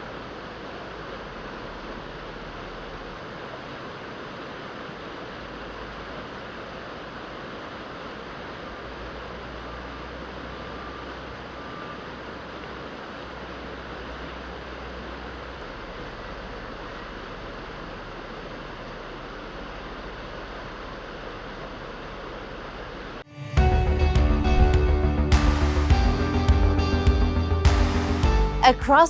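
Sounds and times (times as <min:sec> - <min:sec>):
steady rushing noise: 0:24.3 - 0:25.1.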